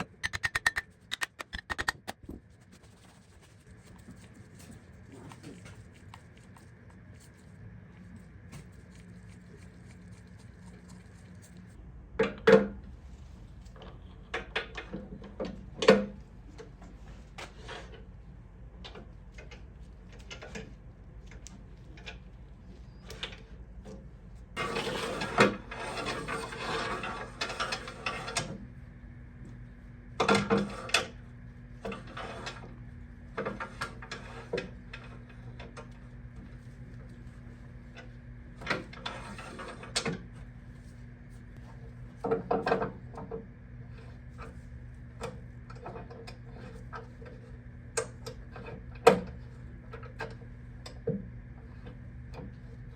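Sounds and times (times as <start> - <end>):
tools and metal parts knocking: 0.0 - 2.2
scraping or rubbing: 0.0 - 7.4
faint steady hum: 0.0 - 52.9.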